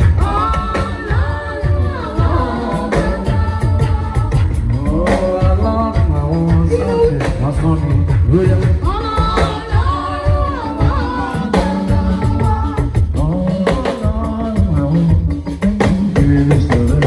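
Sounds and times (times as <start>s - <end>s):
person singing: 0.0s - 17.0s
steady drum beat: 0.0s - 17.0s
deep bass line: 3.2s - 10.4s.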